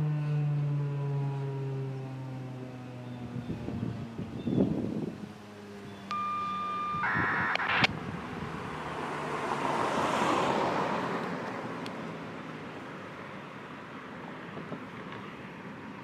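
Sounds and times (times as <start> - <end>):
high beep: 6.1 - 7.9
sharp click: 7.3 - 7.9
vehicle passing by: 7.9 - 13.3.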